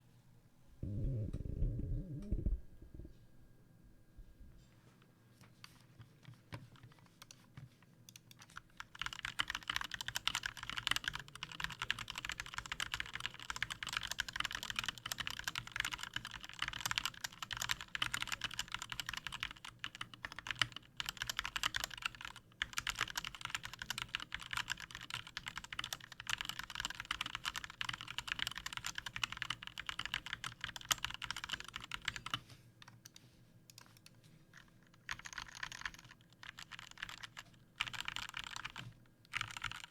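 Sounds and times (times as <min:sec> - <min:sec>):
mechanical keyboard typing: 0:08.1 - 0:39.9.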